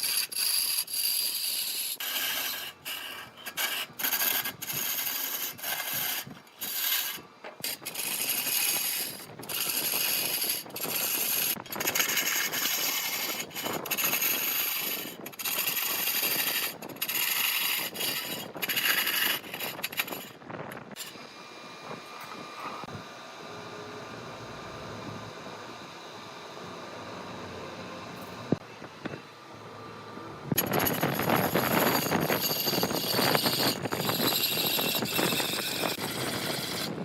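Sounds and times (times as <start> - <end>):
lathe tool scraping wood: 0.0 - 22.9, 30.6 - 37.0.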